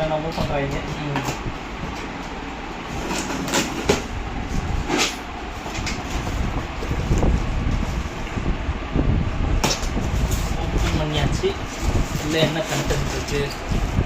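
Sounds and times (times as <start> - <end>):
steady low rumble: 0.0 - 14.0
cardboard scraping: 2.8 - 8.0.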